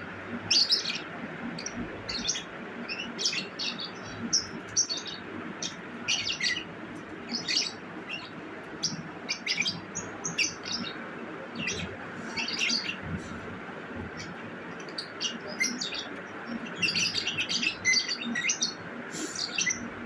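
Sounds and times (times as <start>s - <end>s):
lovebird chirping: 11.6s - 13.4s, 14.2s - 19.9s.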